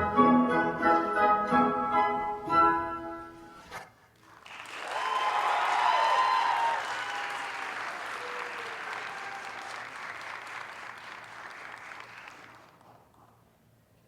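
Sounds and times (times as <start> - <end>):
audience applauding: 4.2 - 13.2
audience cheering: 4.4 - 12.6.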